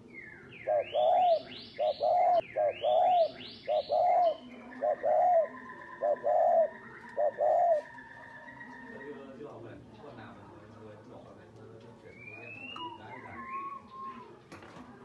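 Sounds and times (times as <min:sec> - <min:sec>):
dove cooing: 0:00.6 - 0:08.9.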